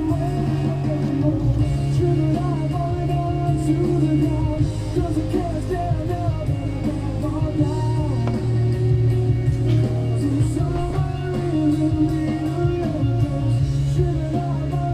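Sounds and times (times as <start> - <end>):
person singing: 0.0 - 14.9
rock music with electric guitar: 0.0 - 14.9.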